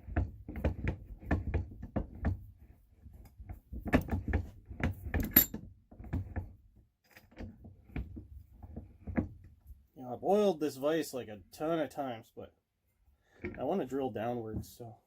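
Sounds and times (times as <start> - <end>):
bench vise clunks and clicks: 5.0 - 5.6
sharp metallic clink: 5.2 - 5.6.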